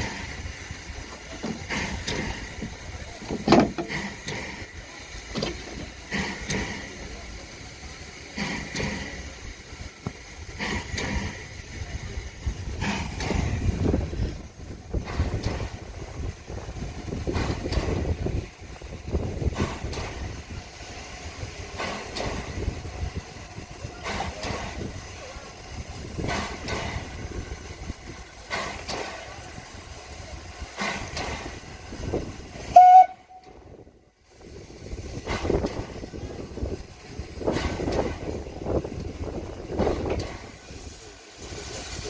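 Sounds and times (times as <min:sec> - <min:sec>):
train rumbling: 0:00.0 - 0:42.0
wheels knocking over rail joints: 0:01.1 - 0:04.5
train whistle toot: 0:32.7 - 0:33.6.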